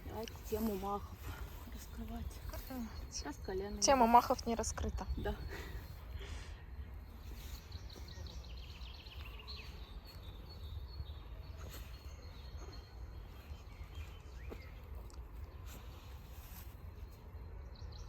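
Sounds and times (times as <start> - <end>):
steady low rumble: 0.0 - 11.6
small birds chirping: 0.0 - 18.0.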